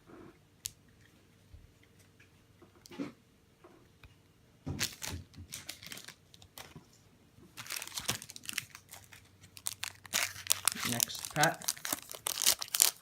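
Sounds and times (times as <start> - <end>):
foil wrapper crinkling: 4.8 - 6.7, 7.6 - 13.0.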